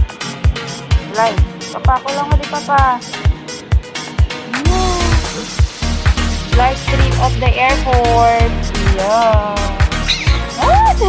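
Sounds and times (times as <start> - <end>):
upbeat dance-pop music: 4.2 - 11.0.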